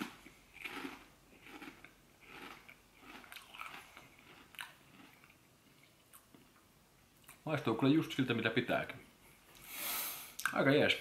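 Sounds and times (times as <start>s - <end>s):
chewing crunchy chips: 0.0s - 6.4s.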